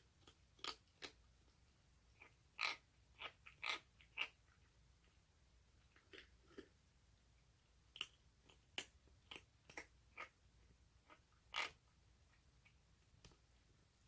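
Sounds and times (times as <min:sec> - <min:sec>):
kitten chewing crunchy food: 0:00.0 - 0:01.3, 0:02.1 - 0:05.2, 0:05.8 - 0:06.8, 0:07.9 - 0:10.4.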